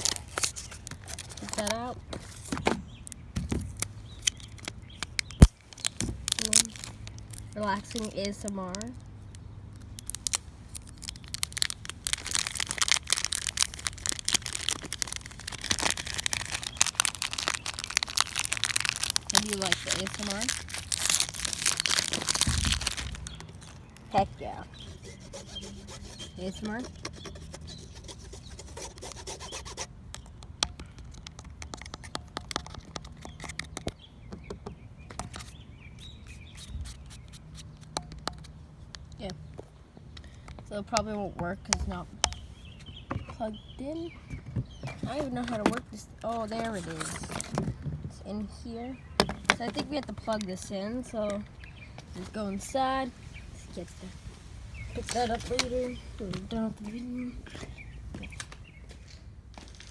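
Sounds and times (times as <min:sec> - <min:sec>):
packaging crinkling: 0:00.0 - 0:02.4, 0:03.7 - 0:09.1, 0:09.8 - 0:25.2.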